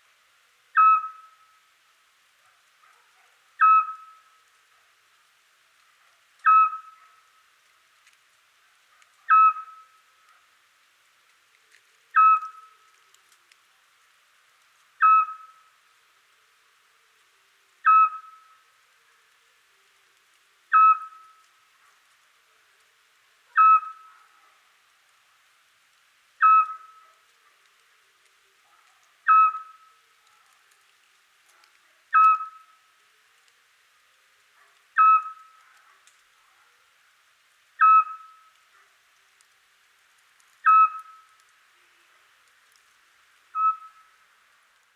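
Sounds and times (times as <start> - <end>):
owl whistled call: 0.8 - 1.6, 3.6 - 4.3, 6.4 - 7.1, 9.3 - 10.0, 12.2 - 12.8, 15.0 - 15.7, 17.8 - 18.6, 20.7 - 21.4, 23.6 - 24.2, 26.4 - 27.0, 29.3 - 29.9, 32.1 - 32.8, 35.0 - 35.6, 37.8 - 38.5, 40.6 - 41.3, 43.5 - 44.1.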